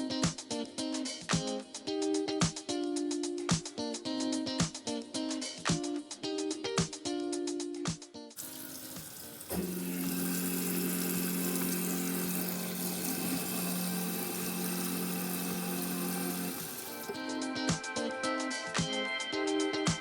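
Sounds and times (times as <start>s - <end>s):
garbage disposal motor humming: 8.4s - 17.2s
water running into sink: 8.4s - 17.2s.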